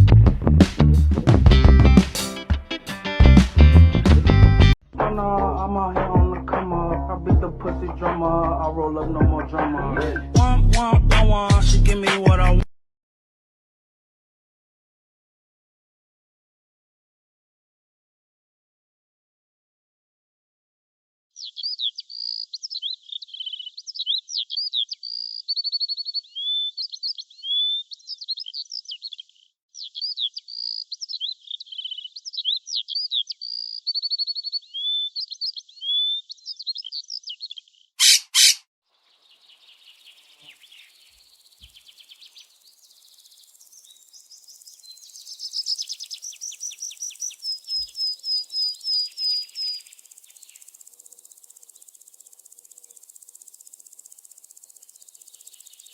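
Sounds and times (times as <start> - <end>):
bird song whistles and trills: 21.4 - 38.6, 39.2 - 52.0
faint high bird calls: 21.4 - 53.2
rapid repeated bird notes: 21.4 - 55.9.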